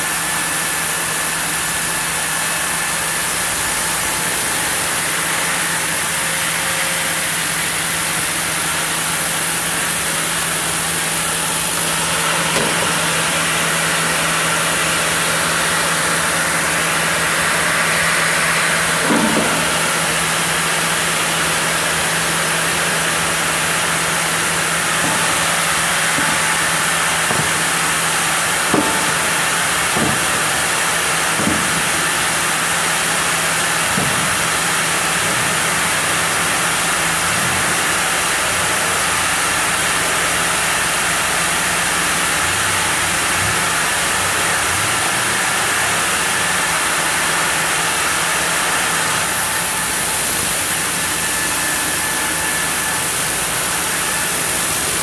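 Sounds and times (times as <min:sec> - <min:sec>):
machinery hiss: 0:00.0 - 0:55.0
sawmill machinery hum: 0:00.0 - 0:55.0.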